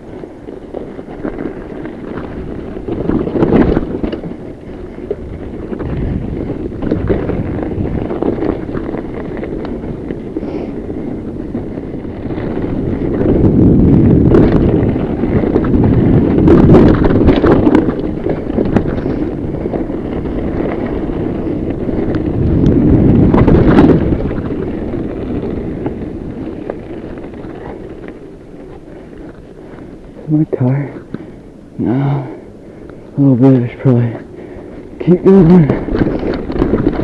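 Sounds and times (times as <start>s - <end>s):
bike knocks and rattles: 0.0s - 30.1s, 35.6s - 37.0s
bike tyre rumble on dirt: 0.0s - 37.0s
wind buffeting microphone: 0.0s - 37.0s.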